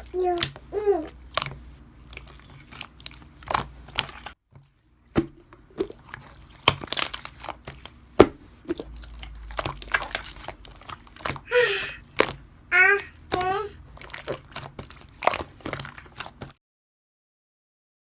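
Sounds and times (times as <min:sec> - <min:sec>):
slime popping and crackling: 0:05.7 - 0:11.5.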